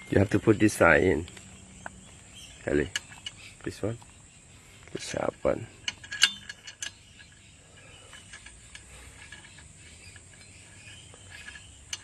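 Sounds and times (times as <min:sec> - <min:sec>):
light metallic clicks: 0:04.8 - 0:12.0.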